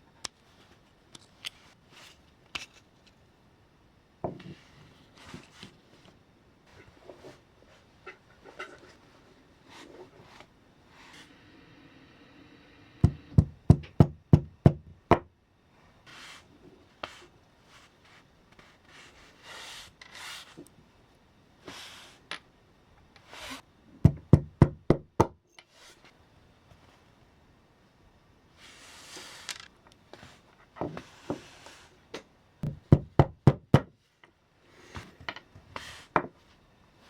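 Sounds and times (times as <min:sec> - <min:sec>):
soft rubbing or scraping: 0:04.4 - 0:11.8, 0:15.9 - 0:20.7, 0:28.6 - 0:32.0.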